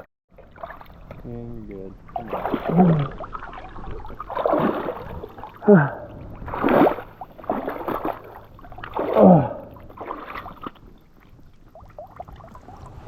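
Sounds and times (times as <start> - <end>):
river water splashing: 0.0 - 13.0
person grunting: 2.7 - 3.1, 5.6 - 6.2, 9.2 - 9.7.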